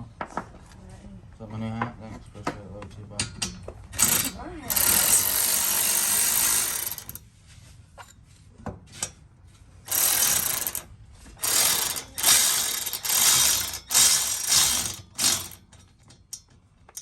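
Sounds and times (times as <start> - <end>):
power tool driving bolts: 3.4 - 7.2, 9.9 - 16.4.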